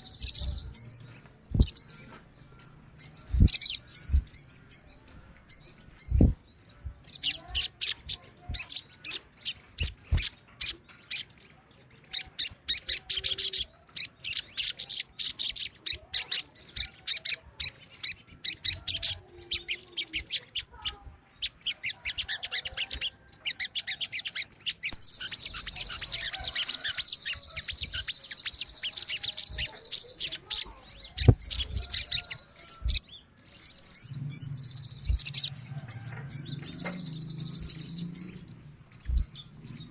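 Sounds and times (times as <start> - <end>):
birds chirping and trilling: 0.0 - 39.9
faint low thumps: 0.4 - 2.0, 3.2 - 7.1.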